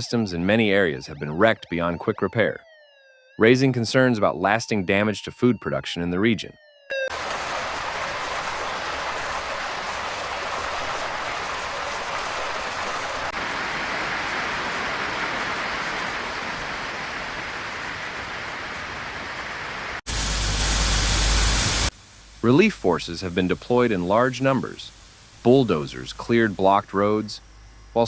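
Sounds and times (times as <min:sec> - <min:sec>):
water rushing: 0:07.0 - 0:27.4.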